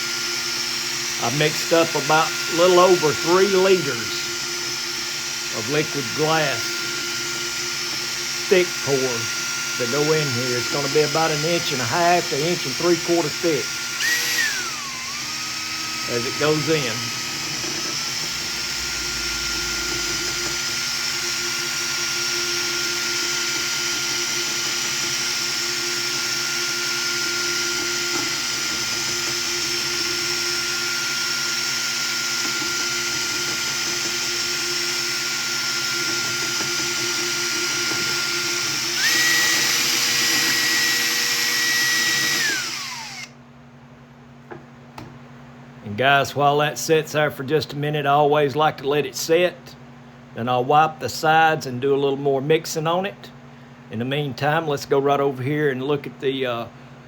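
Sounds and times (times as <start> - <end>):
electric drill motor whining: 0.0 - 43.4
mixing paddle stirring resin: 19.9 - 43.2.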